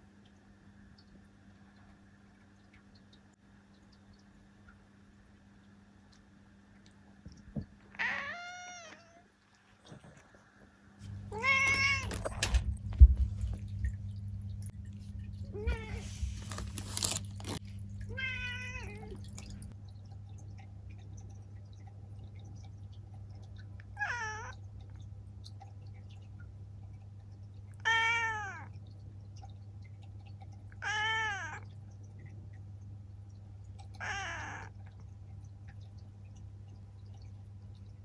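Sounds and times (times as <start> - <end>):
low steady hum: 0.0 - 38.0
cat meowing: 8.0 - 9.2, 11.3 - 12.6, 15.6 - 16.6, 18.1 - 19.2, 27.8 - 28.7, 30.8 - 31.6, 34.0 - 34.7.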